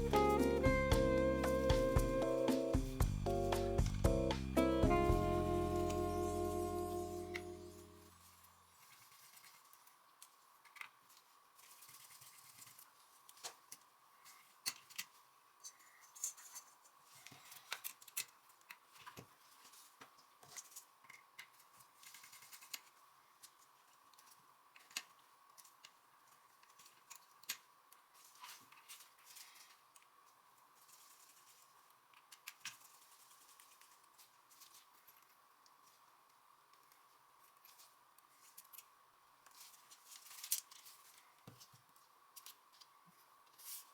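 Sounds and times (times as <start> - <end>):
faint high hum: 0.0 - 8.7
small tools clicking and scraping: 8.8 - 35.8.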